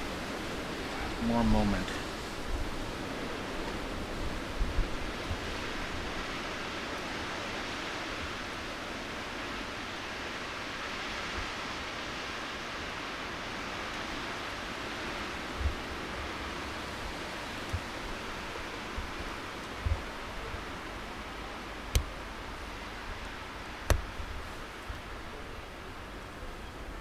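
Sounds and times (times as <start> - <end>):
short low thumps: 17.7 - 20.6, 23.8 - 25.3.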